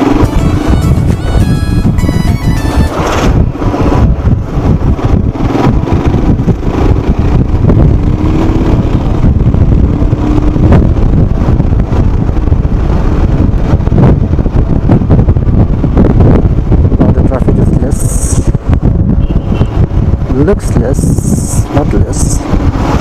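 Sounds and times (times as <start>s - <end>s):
motorcycle engine running: 0.0s - 17.7s
wind rumble on microphone: 0.0s - 23.0s.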